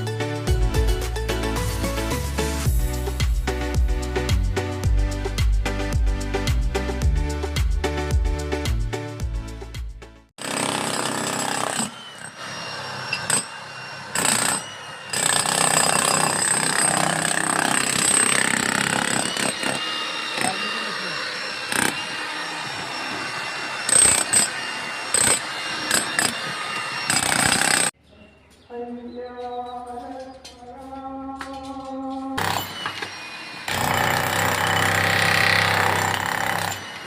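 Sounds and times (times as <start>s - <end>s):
background music: 0.0s - 10.3s
power tool grinding concrete: 10.4s - 28.0s, 32.4s - 37.0s.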